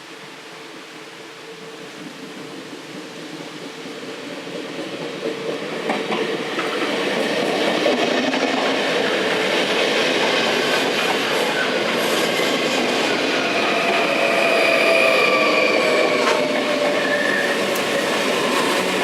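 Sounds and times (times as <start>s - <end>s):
electric train passing: 0.0s - 19.0s
clickety-clack over rail joints: 2.0s - 13.2s.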